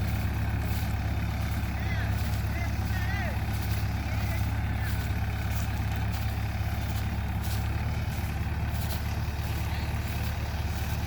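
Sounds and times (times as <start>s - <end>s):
diesel engine droning: 0.0s - 11.0s.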